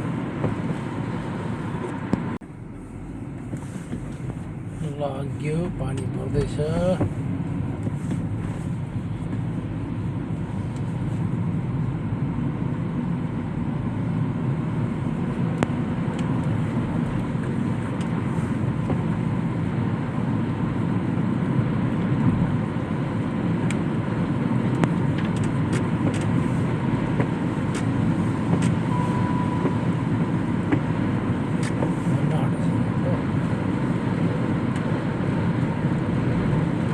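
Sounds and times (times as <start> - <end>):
road vehicle rumble: 0.0 - 36.9
short beep: 28.9 - 29.9.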